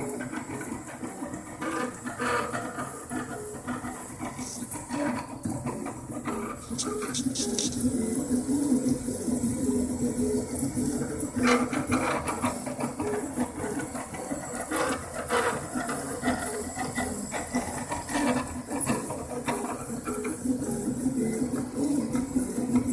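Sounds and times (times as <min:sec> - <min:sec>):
printer motors steady tone: 0:09.1 - 0:22.9.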